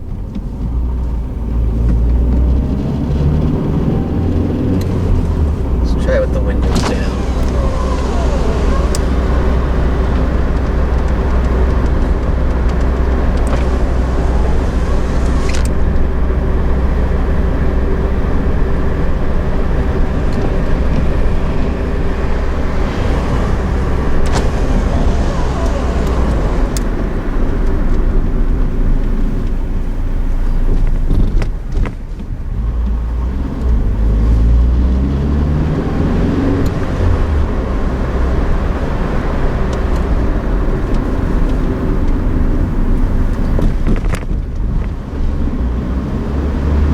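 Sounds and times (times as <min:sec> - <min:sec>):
car engine and road noise: 0:00.0 - 0:46.9.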